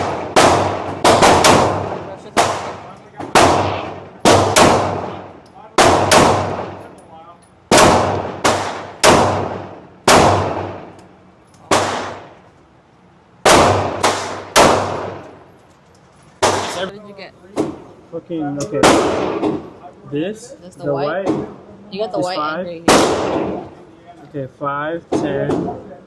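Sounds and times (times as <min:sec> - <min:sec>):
pistol shots echoing: 0:00.0 - 0:06.8, 0:07.7 - 0:11.0, 0:11.7 - 0:12.3, 0:13.4 - 0:15.4, 0:18.8 - 0:19.6, 0:22.9 - 0:23.7.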